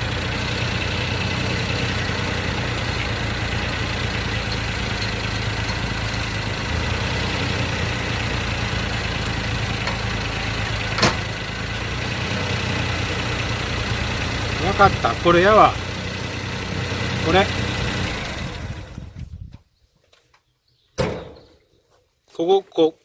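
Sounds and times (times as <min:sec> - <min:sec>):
car engine idling: 0:00.0 - 0:19.3
sharp knock: 0:21.0 - 0:21.5.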